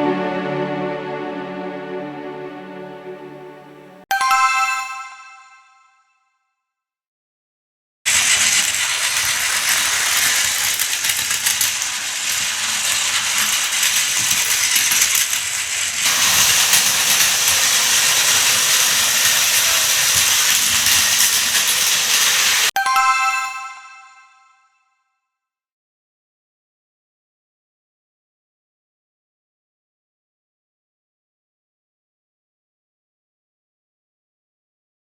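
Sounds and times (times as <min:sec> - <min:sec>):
toy train motor whirring and clattering: 0:08.1 - 0:22.8.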